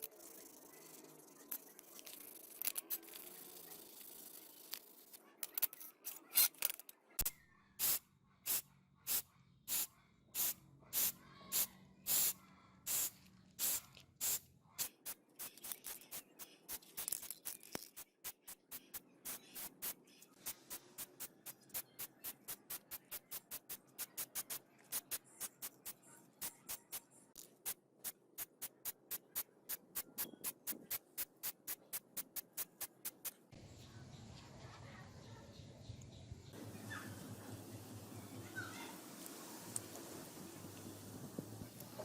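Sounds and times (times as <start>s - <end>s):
aerosol spray paint hissing: 7.8s - 17.2s, 18.2s - 27.0s.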